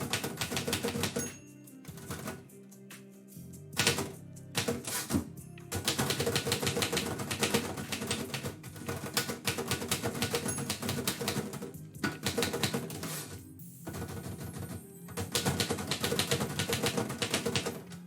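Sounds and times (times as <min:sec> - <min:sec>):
typewriter keys clacking: 0:00.0 - 0:02.4, 0:03.8 - 0:18.0.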